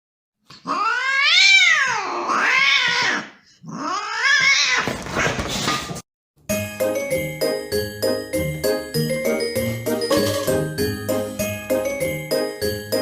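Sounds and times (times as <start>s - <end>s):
cat yowling: 0.6s - 4.9s
tinkling musical jingle: 6.5s - 13.0s.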